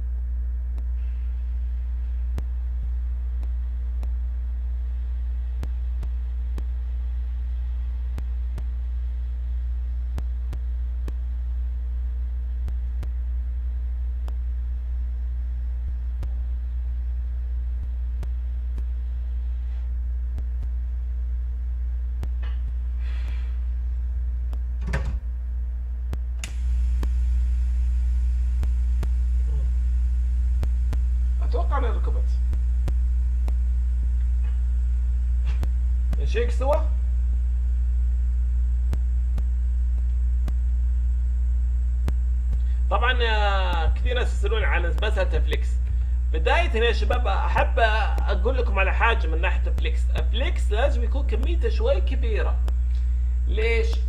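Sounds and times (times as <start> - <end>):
electrical mains hum: 0.0 - 54.0
faint ticks: 5.6 - 7.0, 32.5 - 37.4, 38.5 - 40.8, 41.4 - 42.9, 52.6 - 54.0
higher hum: 9.8 - 54.0.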